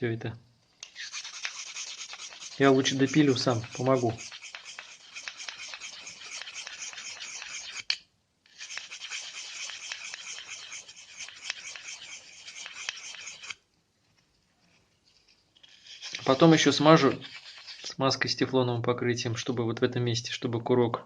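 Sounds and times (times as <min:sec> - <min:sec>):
needle file rasping on plastic: 0:00.8 - 0:13.6, 0:15.6 - 0:18.0.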